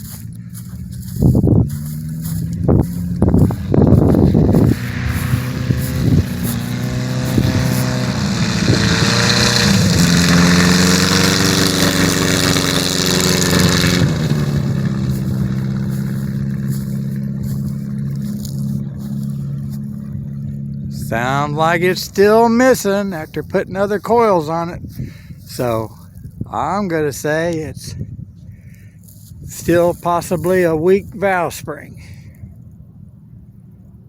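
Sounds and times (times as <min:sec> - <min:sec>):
engine knocks: 0:00.0 - 0:25.7
light aircraft engine running up: 0:00.0 - 0:26.4.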